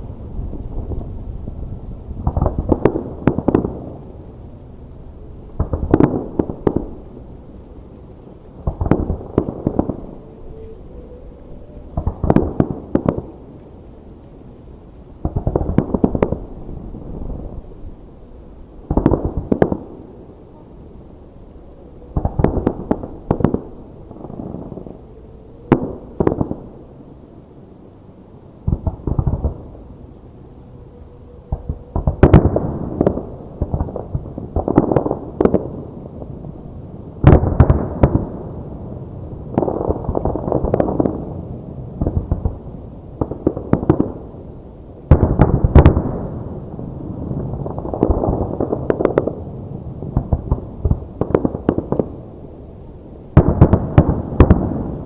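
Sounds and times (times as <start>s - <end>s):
fireworks bangs: 0.0s - 4.2s, 5.5s - 7.2s, 8.6s - 10.6s, 11.9s - 13.5s, 31.5s - 36.4s, 37.1s - 52.3s, 53.3s - 55.0s
fireworks crackling: 0.0s - 10.9s, 11.8s - 20.4s, 31.5s - 55.0s.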